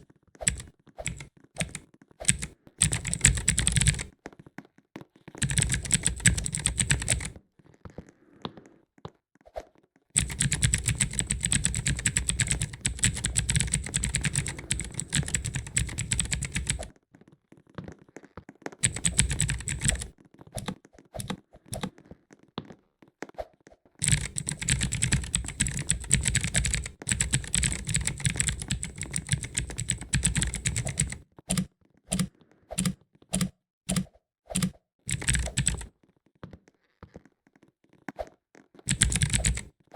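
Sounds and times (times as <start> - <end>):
mechanical keyboard keys clicking: 0.4 - 4.1, 5.4 - 7.4, 10.2 - 16.9, 18.8 - 21.9, 24.0 - 35.9, 38.9 - 39.7.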